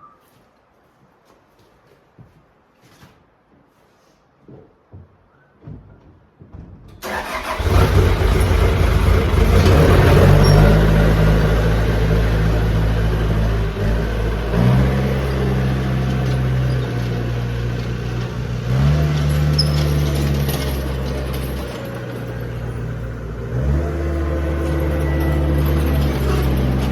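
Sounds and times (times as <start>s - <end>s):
skid steer engine running: 7.0s - 26.9s.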